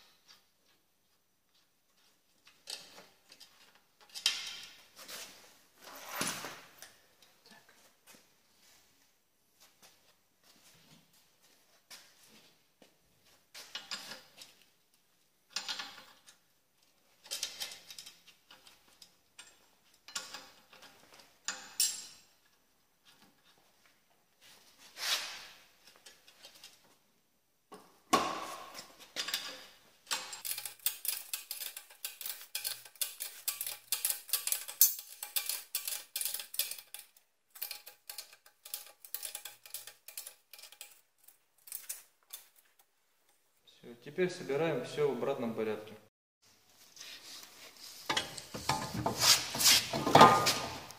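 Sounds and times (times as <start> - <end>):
tools scraping and knocking metal: 1.5 - 7.3, 13.6 - 14.7, 15.5 - 16.4, 17.1 - 23.6, 27.7 - 42.9, 47.0 - 50.9.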